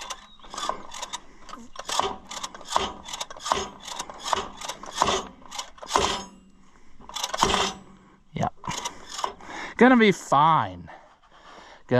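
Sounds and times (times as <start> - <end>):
clutch linkage clacking: 0.0 - 6.4, 7.1 - 7.8.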